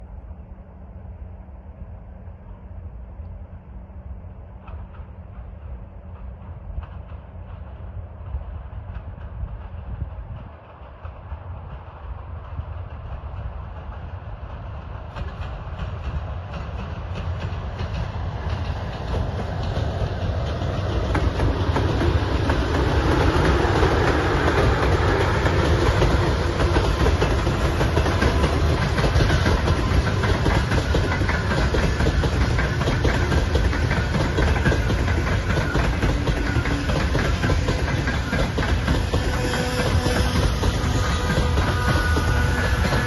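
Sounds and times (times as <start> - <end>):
train wheels clattering over rails: 4.5 - 43.0.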